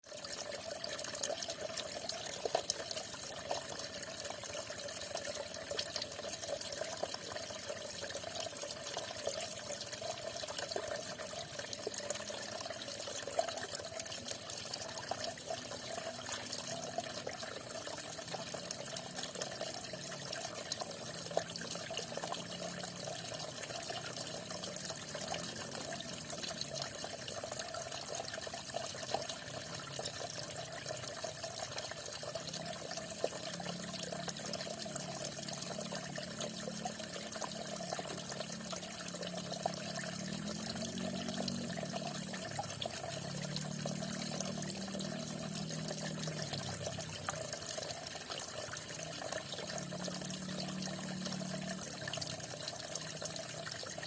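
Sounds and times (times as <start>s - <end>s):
water drips: 0.0s - 54.0s
falling water splashing: 37.4s - 54.0s.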